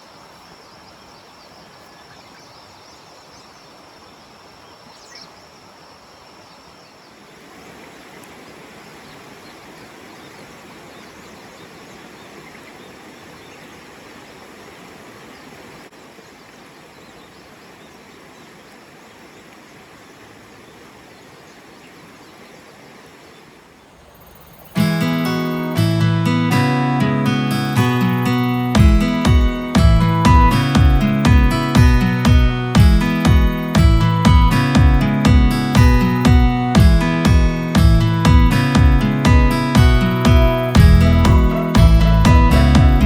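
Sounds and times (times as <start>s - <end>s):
bird chirp: 0.0s - 5.8s, 15.2s - 25.8s, 39.6s - 43.0s
steady outdoor hiss: 0.0s - 43.0s
high insect drone: 23.9s - 25.9s, 27.7s - 36.6s.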